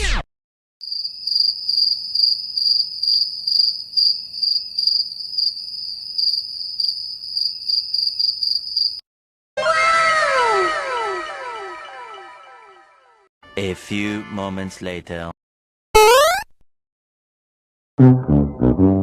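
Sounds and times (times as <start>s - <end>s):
crickets chirping: 0.8s - 9.0s.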